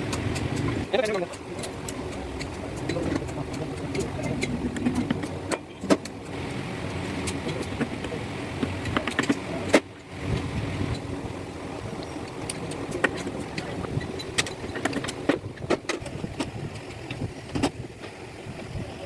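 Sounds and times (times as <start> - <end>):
hand tools clinking on metal: 0.0 - 6.2
low rumble: 2.0 - 7.0.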